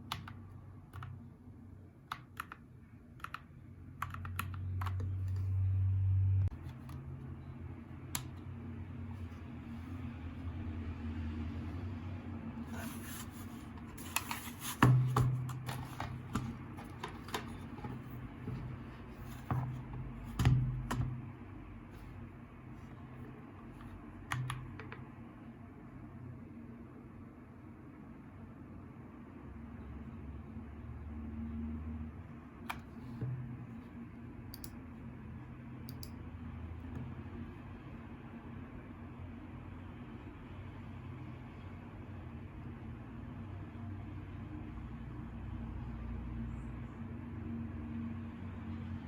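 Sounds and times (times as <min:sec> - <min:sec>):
mechanical keyboard clicks: 0:02.1 - 0:02.6, 0:03.2 - 0:05.2.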